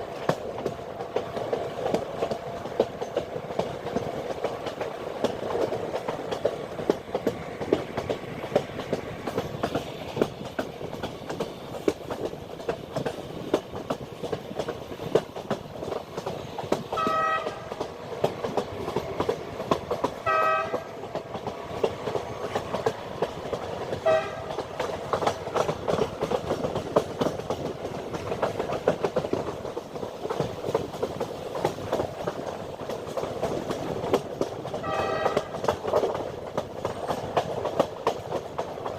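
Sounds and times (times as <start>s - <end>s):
train wheels clattering over rails: 0.0s - 38.9s
train horn: 16.9s - 17.8s, 20.2s - 21.1s, 24.0s - 24.6s, 34.8s - 35.7s.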